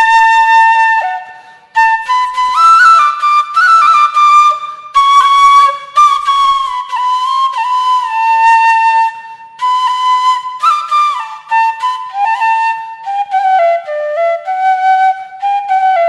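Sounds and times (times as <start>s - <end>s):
solo flute melody: 0.0s - 16.0s.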